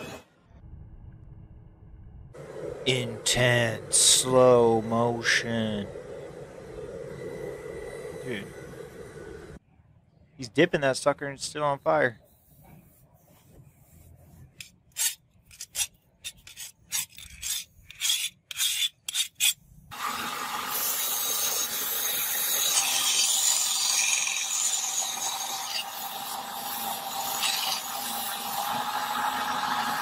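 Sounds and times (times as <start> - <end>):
steady hum: 0.0 - 9.6
continuous grinding hiss: 2.4 - 9.6
metal blade scraping strokes: 12.3 - 19.6, 20.8 - 28.4.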